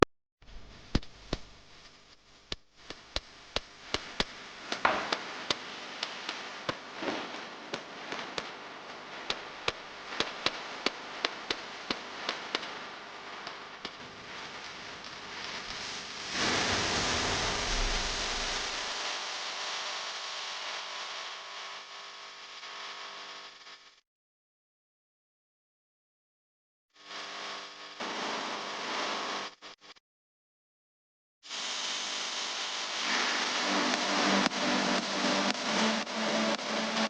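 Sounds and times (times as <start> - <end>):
steady whirring noise: 16.4 - 18.8.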